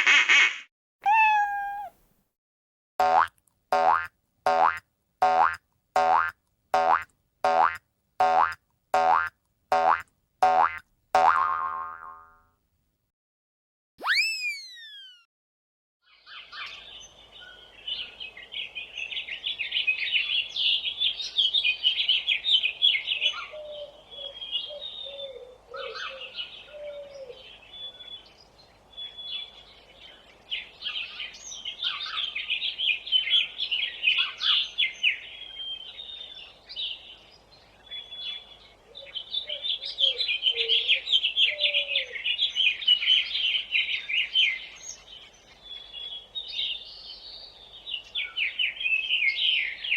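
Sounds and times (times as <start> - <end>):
songbirds chirping: 16.1 - 49.9.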